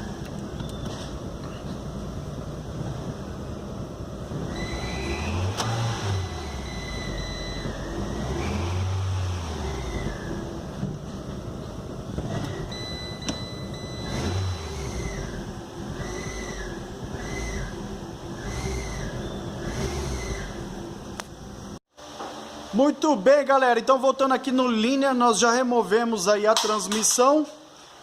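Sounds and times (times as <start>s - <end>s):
car engine revving: 4.2s - 12.8s, 13.7s - 21.8s.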